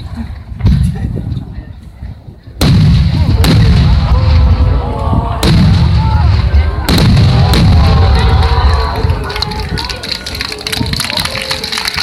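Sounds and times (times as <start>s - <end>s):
fireworks booming: 2.6s - 9.0s.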